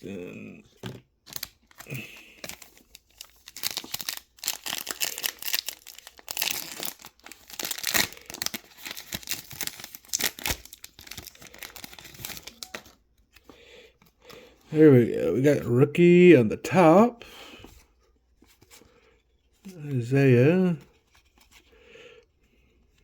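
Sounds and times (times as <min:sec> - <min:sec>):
plastic wrapper tearing and crinkling: 0:01.3 - 0:13.0.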